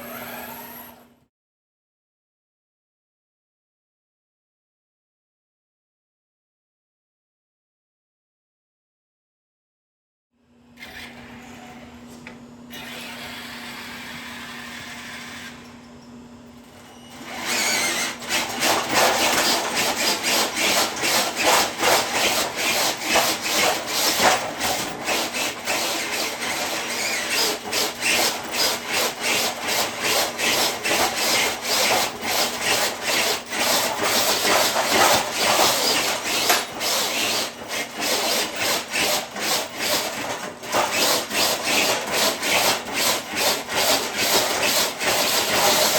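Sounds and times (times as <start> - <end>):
scraping and grinding of sled: 17.3 - 45.9.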